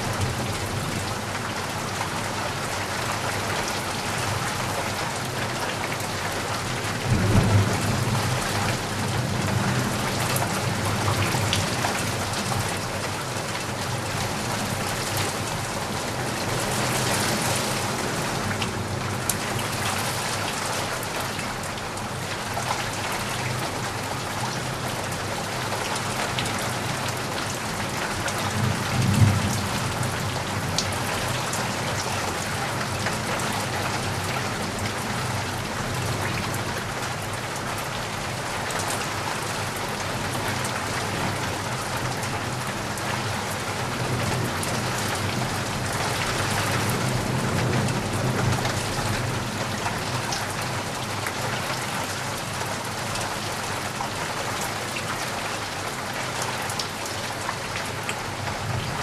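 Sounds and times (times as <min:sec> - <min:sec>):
rain pattering: 0:00.0 - 0:59.0
rumble of thunder: 0:06.9 - 0:12.7, 0:28.4 - 0:33.6.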